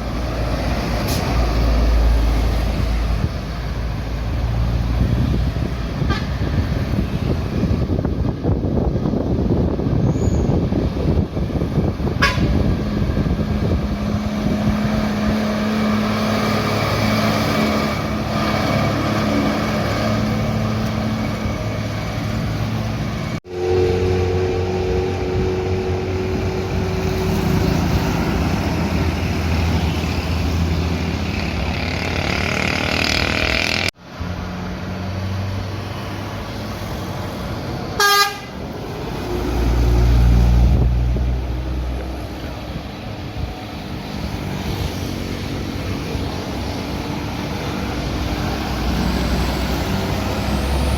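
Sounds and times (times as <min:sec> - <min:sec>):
diesel coach engines pulling hard: 0:00.0 - 0:50.9
loud horn blast: 0:06.0 - 0:06.6, 0:12.2 - 0:12.8, 0:23.5 - 0:27.7, 0:38.0 - 0:38.6.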